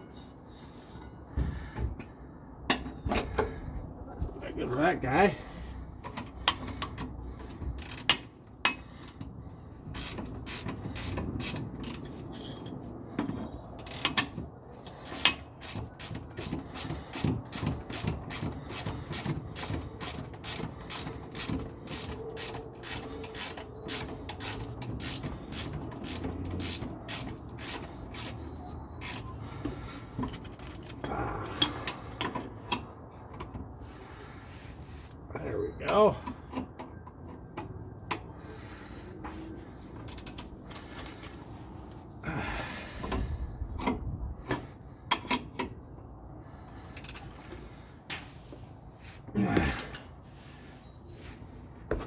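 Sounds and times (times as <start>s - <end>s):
ratchet wrench clicking: 7.8s - 9.2s, 9.9s - 12.2s, 13.8s - 29.4s, 30.3s - 31.0s, 40.1s - 40.8s, 47.0s - 47.3s.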